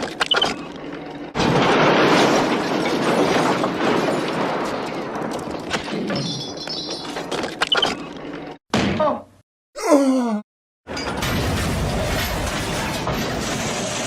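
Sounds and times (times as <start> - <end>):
loud crash with clattering debris: 1.3 - 6.6, 10.9 - 14.0.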